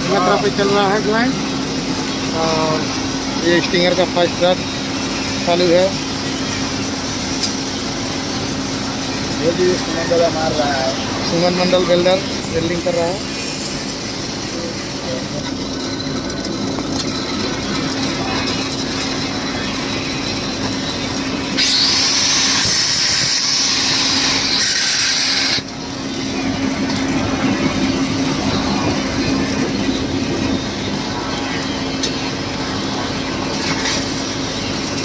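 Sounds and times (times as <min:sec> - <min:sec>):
site machinery hum: 0:00.0 - 0:35.0
welding arc crackling hiss: 0:00.0 - 0:35.0
loud hiss: 0:21.6 - 0:25.6.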